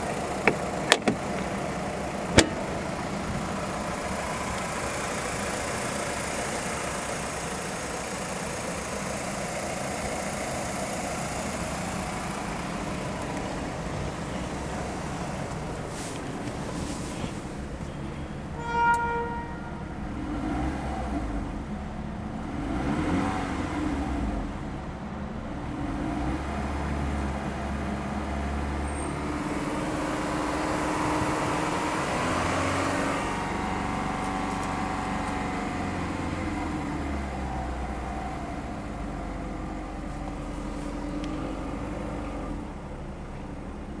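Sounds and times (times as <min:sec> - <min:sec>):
car engine running: 0:00.0 - 0:18.6, 0:29.7 - 0:44.0
short horn-like tone: 0:18.6 - 0:20.0.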